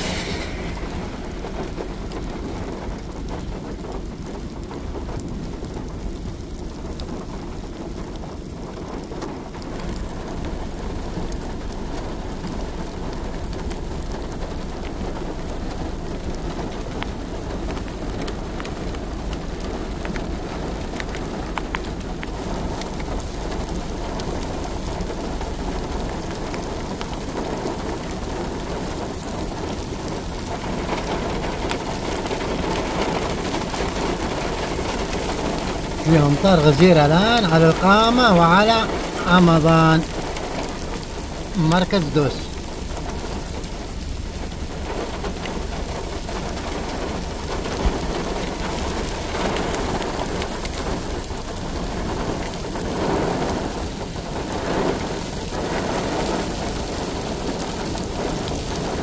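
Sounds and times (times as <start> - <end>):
low rumble: 0.0 - 7.0
heavy rain pattering: 0.0 - 59.0.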